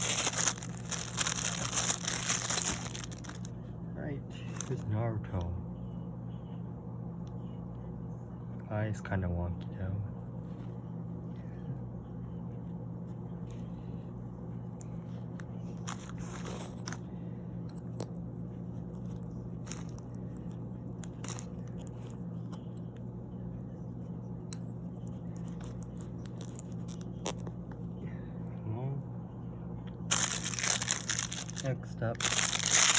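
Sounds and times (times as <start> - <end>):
plastic parts clicking and crinkling: 0.0 - 3.5, 19.7 - 20.0, 21.0 - 21.8, 30.1 - 32.9
steady low hum: 0.0 - 32.9.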